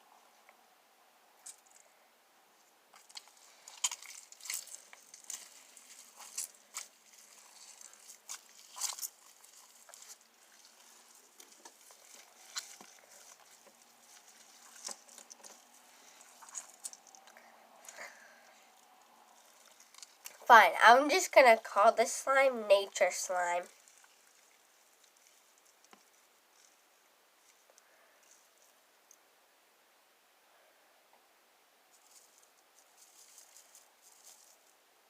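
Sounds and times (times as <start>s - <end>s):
slime squeezed with crackling pops: 3.0s - 17.3s.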